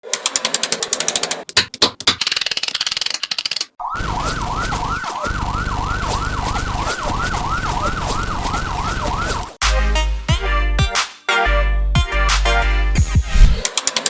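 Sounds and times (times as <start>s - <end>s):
rapid clicking: 0.0s - 9.5s
police siren: 3.9s - 9.6s.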